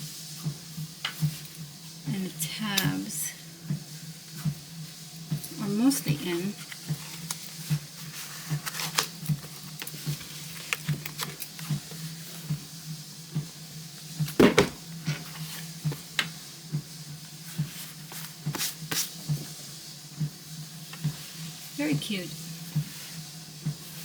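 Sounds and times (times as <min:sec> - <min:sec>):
leather and paper rustling: 0:06.5 - 0:11.9
thump: 0:14.4 - 0:14.8.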